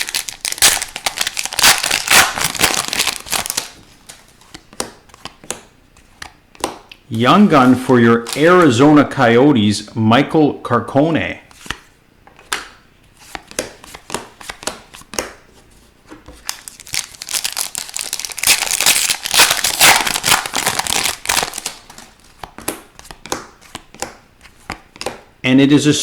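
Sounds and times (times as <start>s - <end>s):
packaging crinkling: 0.0s - 4.3s, 16.4s - 22.3s.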